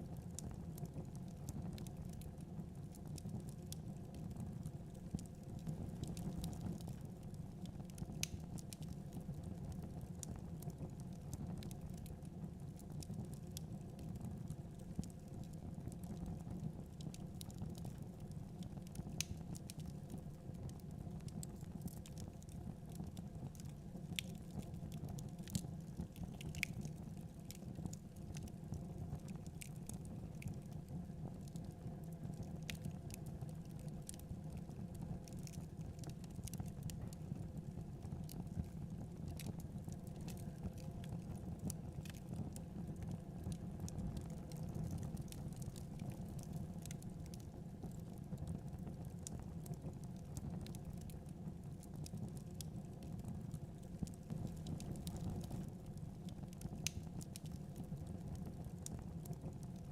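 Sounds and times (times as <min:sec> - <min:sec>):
logs crackling and popping: 0:03.0 - 0:09.7, 0:18.9 - 0:30.9, 0:31.5 - 0:59.8.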